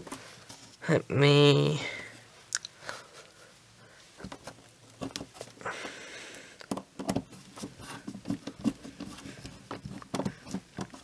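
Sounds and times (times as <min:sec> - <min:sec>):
scraping rustle: 0:07.1 - 0:11.0.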